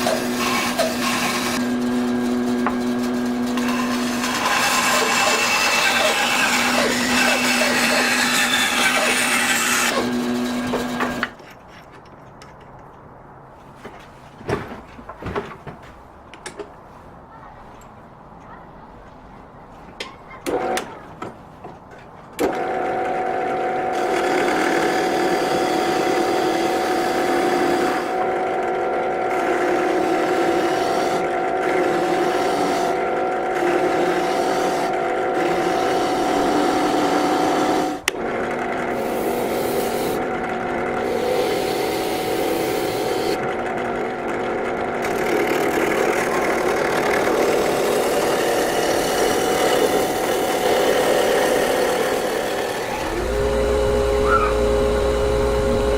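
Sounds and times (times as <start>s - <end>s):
woodworking machine running: 0.0s - 11.4s, 22.4s - 55.9s
wood cutting hiss: 29.8s - 33.0s, 39.0s - 40.2s, 41.0s - 43.4s, 47.2s - 55.9s.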